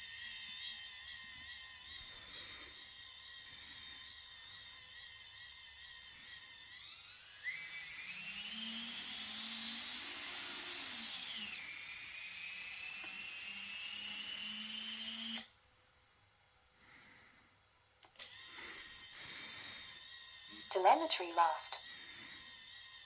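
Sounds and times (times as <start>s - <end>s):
drone motors whining: 0.0s - 15.5s, 18.1s - 23.0s
click: 18.0s - 18.3s.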